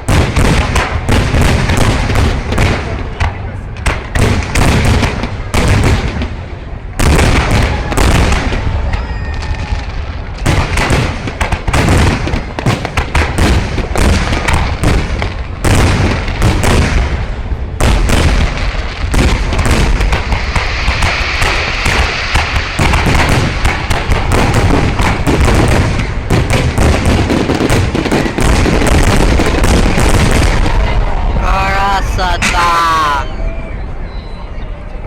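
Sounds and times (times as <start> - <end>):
fireworks bangs and booms: 0.0 - 33.3
rising firework shell whistle: 8.9 - 9.9, 33.1 - 34.7.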